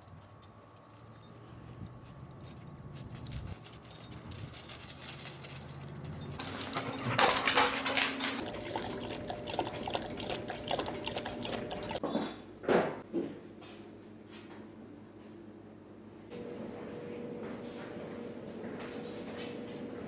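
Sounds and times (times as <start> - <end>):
dog making clicking sounds: 6.4 - 12.0.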